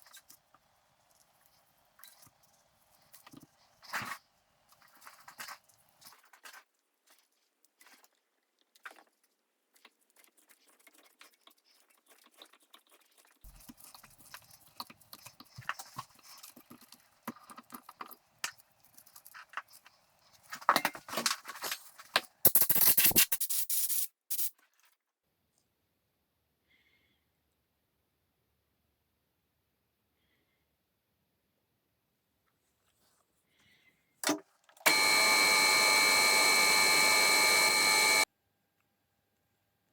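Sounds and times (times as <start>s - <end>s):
small parts scraping and clicking: 9.8s - 24.6s.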